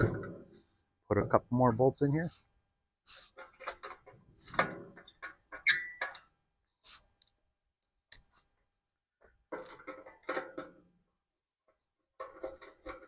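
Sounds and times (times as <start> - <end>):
metal bolts clinking and rattling: 3.4 - 6.3
short metallic ring: 5.7 - 6.1.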